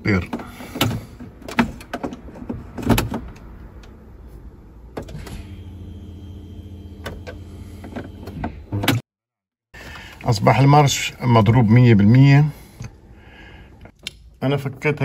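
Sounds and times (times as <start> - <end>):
low electric motor hum: 4.4 - 9.0.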